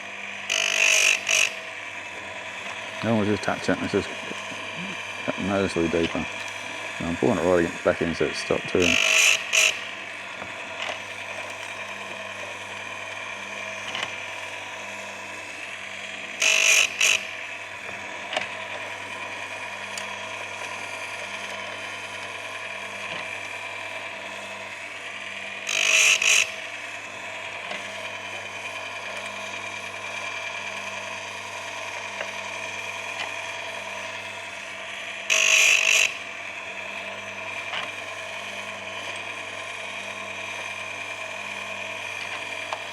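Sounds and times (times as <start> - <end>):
sharpener motor humming: 0.0 - 42.9
grinding wheel rasping on chain: 0.4 - 10.0, 16.1 - 17.4, 25.4 - 26.6, 35.3 - 37.8.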